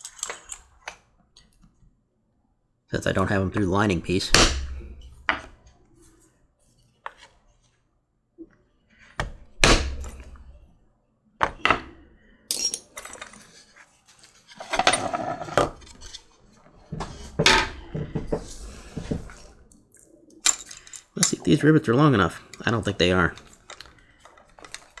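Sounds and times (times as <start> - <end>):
metal tools clinking: 0.0 - 0.7, 12.5 - 13.6, 14.2 - 15.5, 20.0 - 21.7, 22.3 - 25.0.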